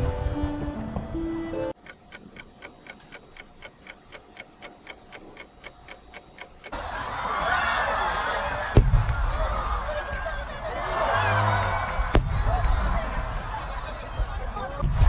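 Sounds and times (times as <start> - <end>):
clock ticking: 1.7 - 9.3.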